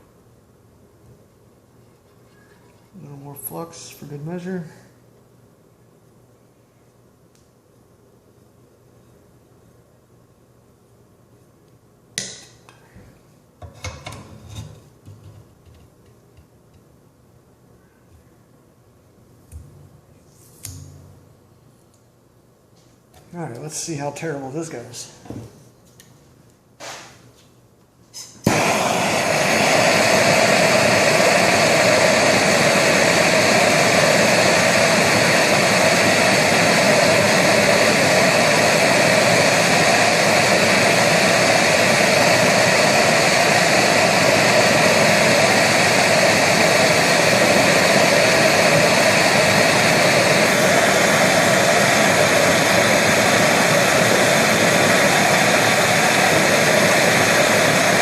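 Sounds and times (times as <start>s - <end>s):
gas torch hissing: 28.2s - 58.0s
torch ignition click: 28.4s - 58.0s.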